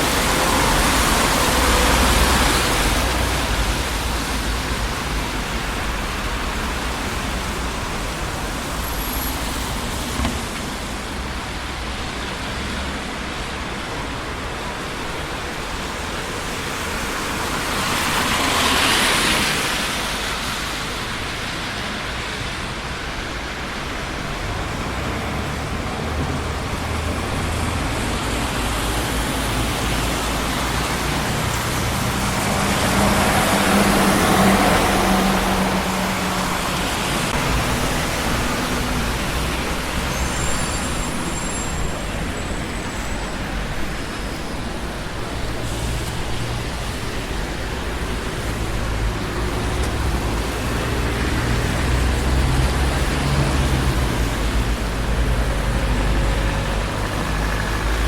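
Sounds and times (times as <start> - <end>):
city street traffic: 0.0 - 58.0
vehicle passing close by: 24.4 - 40.3.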